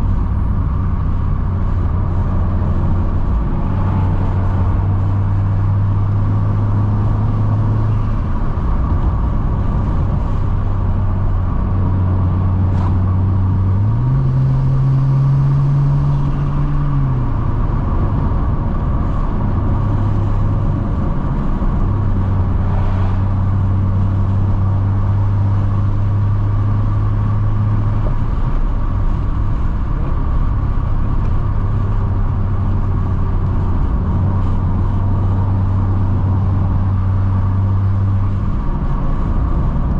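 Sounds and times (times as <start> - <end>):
car engine and exhaust droning: 0.0 - 39.9
road noise: 0.0 - 39.9.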